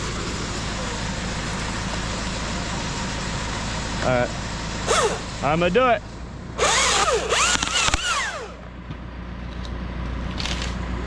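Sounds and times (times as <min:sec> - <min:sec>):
chainsaw revving: 0:04.8 - 0:05.6, 0:06.6 - 0:08.7.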